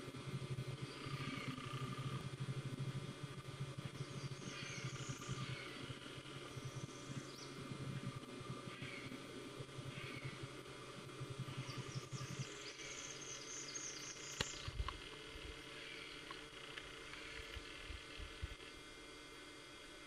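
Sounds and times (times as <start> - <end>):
soft bird calls: 8.7 - 9.2.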